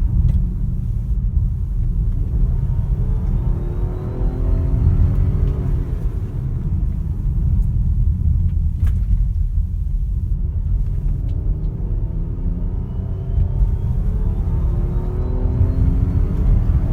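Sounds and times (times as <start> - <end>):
car engine revving: 0.0 - 16.9
faint high whistle: 12.8 - 16.6.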